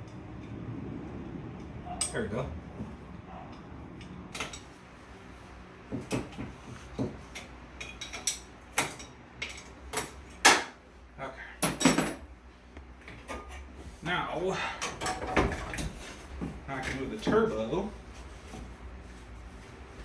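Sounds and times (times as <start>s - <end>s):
metal tools clinking and clanking: 1.6s - 2.3s, 3.4s - 4.8s, 7.3s - 10.5s, 11.6s - 12.3s, 14.8s - 16.2s.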